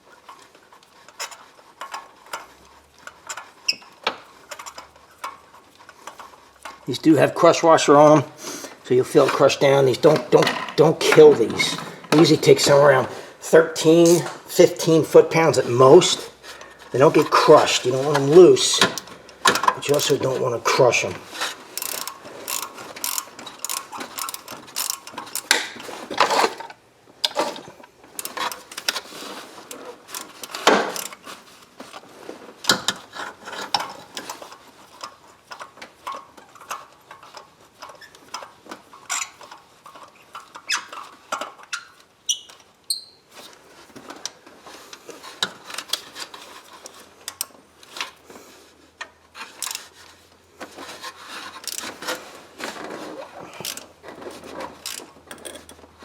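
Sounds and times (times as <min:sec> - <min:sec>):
hand ratchet clicking: 0:01.1 - 0:06.9, 0:21.4 - 0:25.8, 0:30.1 - 0:31.3, 0:49.5 - 0:49.9, 0:53.6 - 0:53.9, 0:54.8 - 0:55.8
metal tools clinking: 0:08.8 - 0:13.1, 0:13.8 - 0:26.6.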